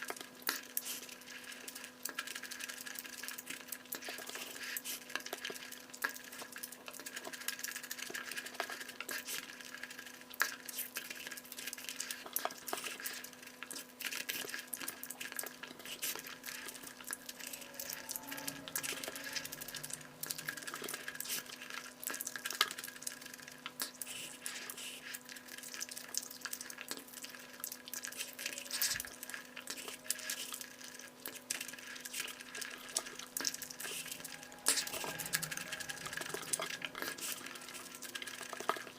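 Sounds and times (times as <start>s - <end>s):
wet chewing and mixing food: 0.0s - 38.9s
low hum: 16.4s - 22.2s.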